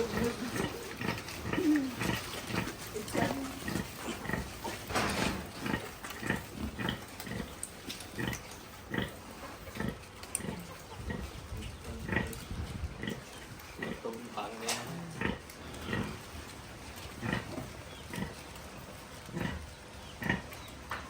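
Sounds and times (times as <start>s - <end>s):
pig squealing: 0.0s - 4.8s
pigs grunting: 0.0s - 20.7s.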